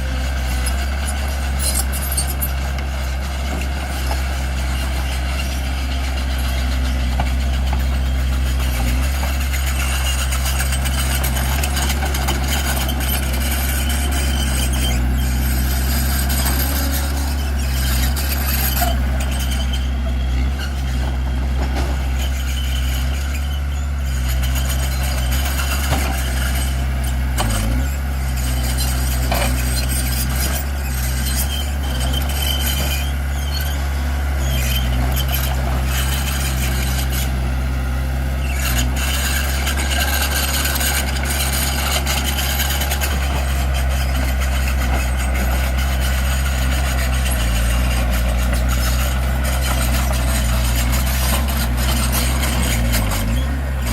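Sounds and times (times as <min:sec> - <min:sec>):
heavy diesel engine running: 0:00.0 - 0:53.9.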